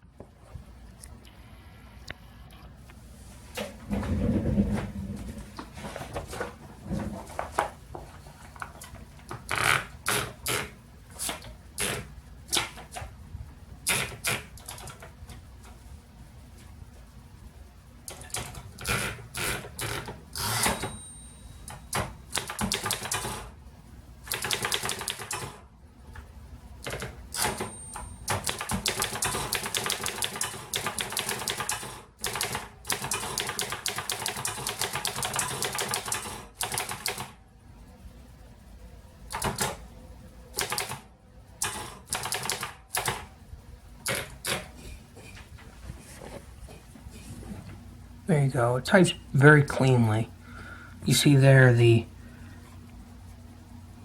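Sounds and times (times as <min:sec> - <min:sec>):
typewriter margin bell ringing: 0:20.5 - 0:21.7, 0:27.4 - 0:28.3.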